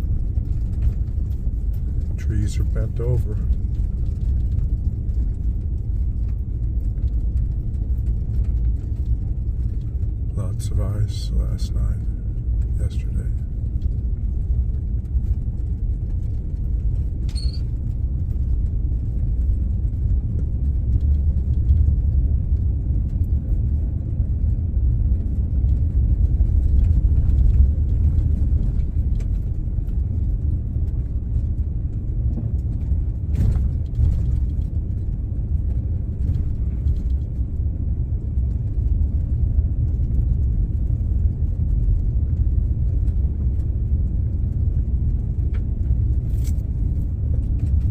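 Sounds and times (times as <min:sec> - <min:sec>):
vehicle engine rumble from inside: 0:00.0 - 0:47.9.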